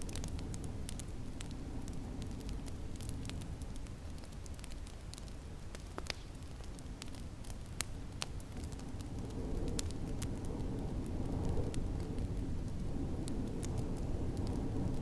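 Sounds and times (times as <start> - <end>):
low rumble of wind: 0.0 - 15.0
wood fire crackling and popping: 0.0 - 15.0.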